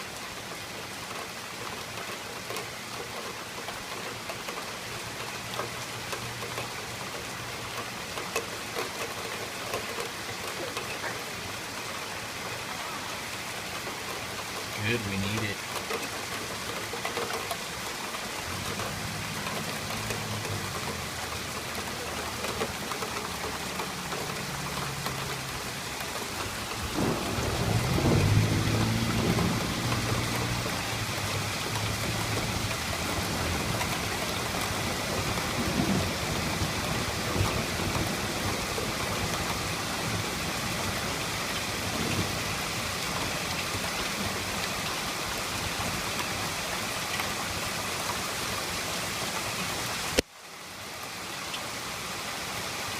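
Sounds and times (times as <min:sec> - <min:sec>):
heavy rain: 0:00.0 - 0:52.9
thunder rumbling: 0:26.5 - 0:41.2.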